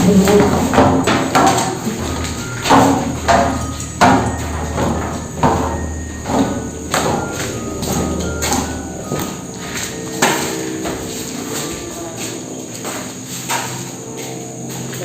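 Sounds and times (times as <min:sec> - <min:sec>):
background music percussive hits: 0:00.0 - 0:11.7
low drone: 0:00.0 - 0:15.0.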